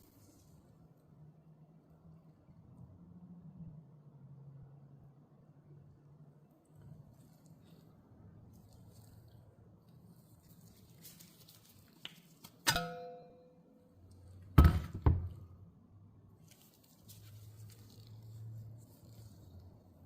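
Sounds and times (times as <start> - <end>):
faint low hum: 0.0 - 12.1.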